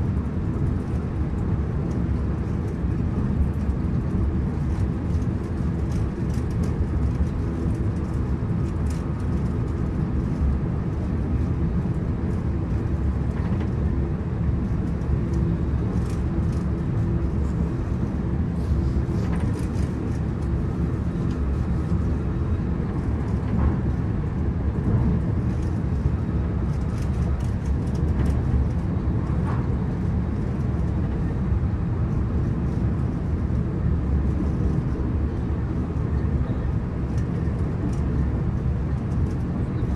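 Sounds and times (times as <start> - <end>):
light ticks and rattles: 3.4 - 10.6, 14.7 - 17.9, 24.8 - 31.2.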